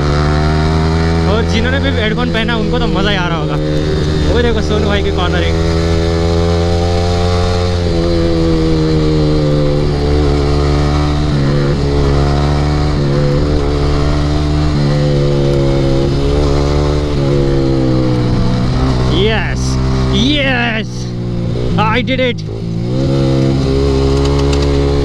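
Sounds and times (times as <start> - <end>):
motorcycle engine revving: 0.0 - 25.0.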